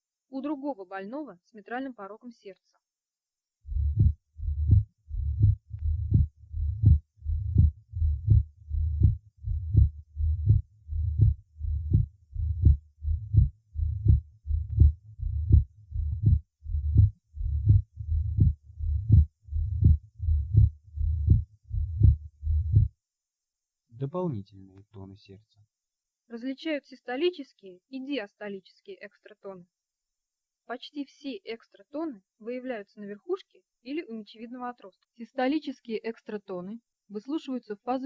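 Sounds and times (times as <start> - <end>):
heartbeat through stethoscope: 3.7 - 22.9.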